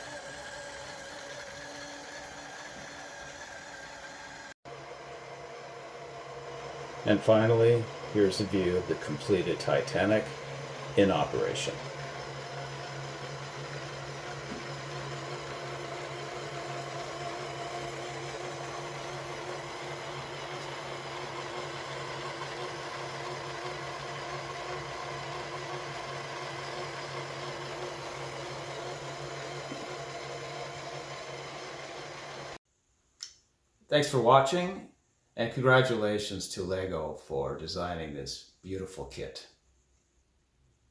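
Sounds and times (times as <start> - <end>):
small electric motor whirring: 0.0 - 32.6.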